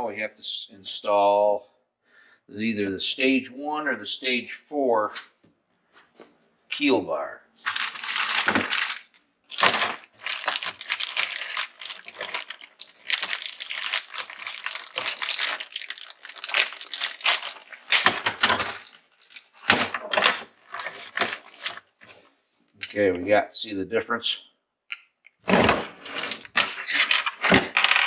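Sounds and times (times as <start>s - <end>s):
packaging crinkling and tearing: 7.6s - 22.2s.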